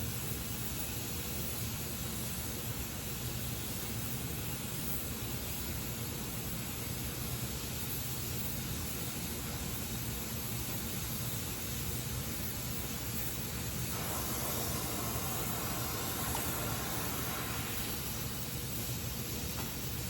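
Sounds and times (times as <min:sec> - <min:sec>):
welding torch flame hissing: 0:07.8 - 0:20.0.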